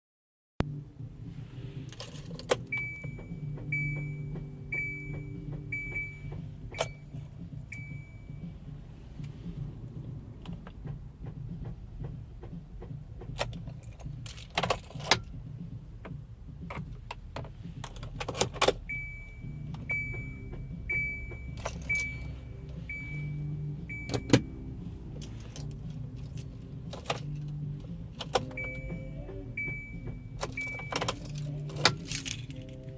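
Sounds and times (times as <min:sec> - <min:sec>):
steady low hum: 0:00.6 - 0:32.9
keys jangling: 0:01.9 - 0:02.9, 0:13.4 - 0:15.3, 0:21.6 - 0:22.2, 0:25.2 - 0:27.6, 0:30.4 - 0:32.9
car warning chime beeping: 0:02.3 - 0:09.6, 0:18.5 - 0:32.1
sharp clicks and knocks: 0:10.3 - 0:18.9.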